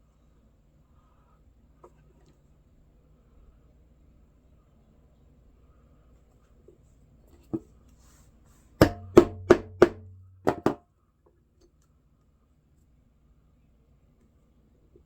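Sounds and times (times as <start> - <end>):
low hum: 8.8 - 10.7
sharp knocks: 8.8 - 10.8.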